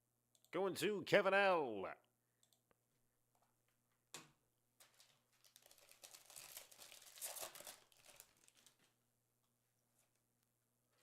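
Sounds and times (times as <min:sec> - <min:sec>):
plastic packaging crinkling: 0:04.8 - 0:09.0.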